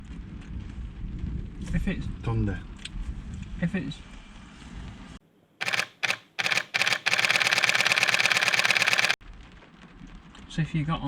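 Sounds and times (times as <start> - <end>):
camera shutter firing: 5.6 - 9.2.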